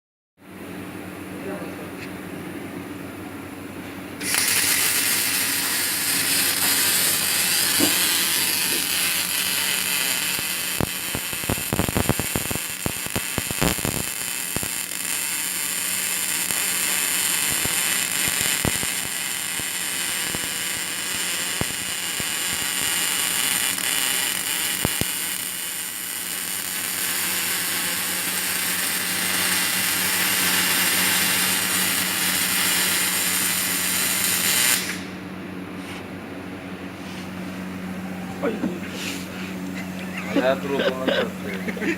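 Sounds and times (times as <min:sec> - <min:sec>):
arc welding hiss and crackle: 0:04.2 - 0:35.2
sharp welding crackles and pops: 0:04.2 - 0:35.2.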